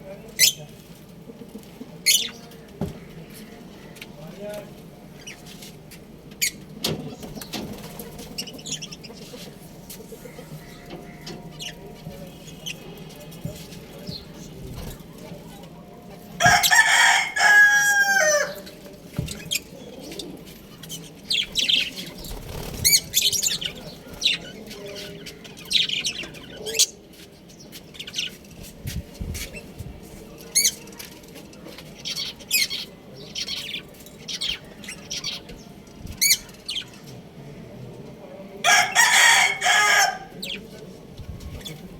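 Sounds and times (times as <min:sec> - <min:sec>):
rooster crowing: 0:16.4 - 0:18.6, 0:38.6 - 0:40.4.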